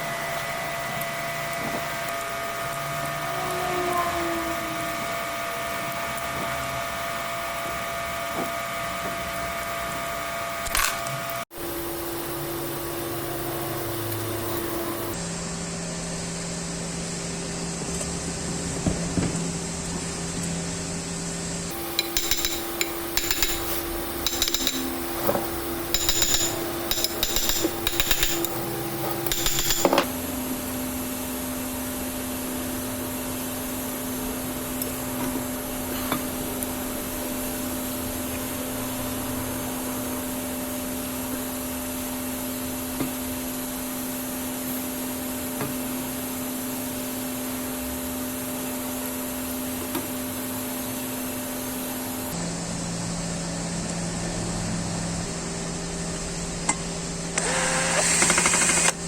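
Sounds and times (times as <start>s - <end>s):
steady mechanical hum: 0.0s - 59.0s
hammer striking metal: 21.7s - 30.1s.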